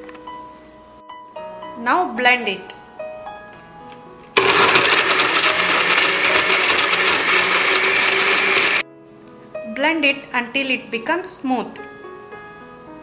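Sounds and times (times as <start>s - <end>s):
kitchen blender running: 4.4s - 8.8s.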